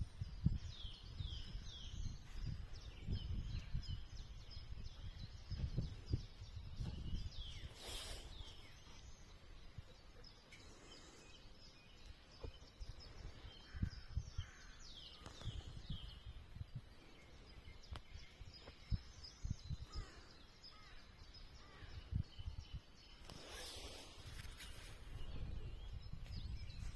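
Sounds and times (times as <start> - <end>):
small birds chirping: 0.0 - 26.9.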